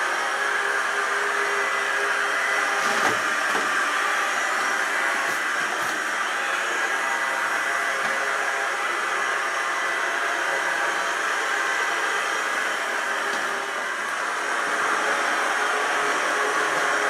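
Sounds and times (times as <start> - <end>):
robot vacuum cleaner whirring: 0.0 - 17.0.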